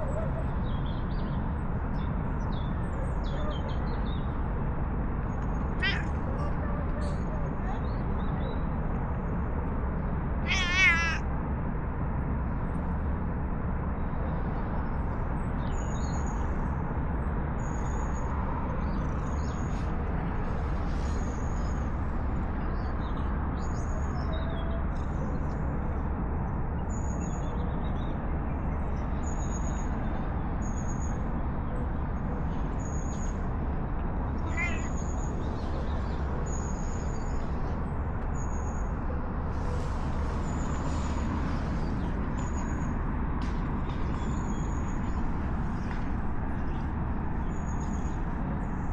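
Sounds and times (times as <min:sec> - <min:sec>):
cat meowing: 0:05.8 - 0:06.5, 0:10.4 - 0:11.2, 0:34.4 - 0:35.0.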